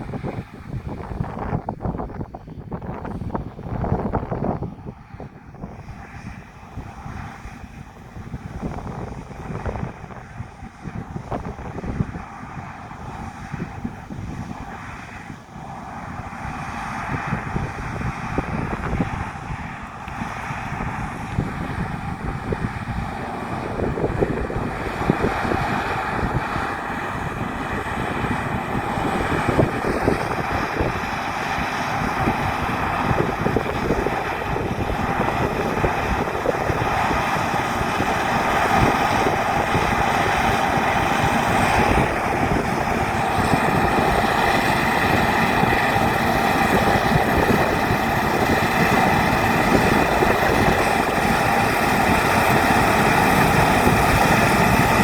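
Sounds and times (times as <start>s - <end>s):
combine harvester engine running: 0.0s - 55.0s
wind on microphone: 0.0s - 55.0s
whining drives: 17.5s - 55.0s.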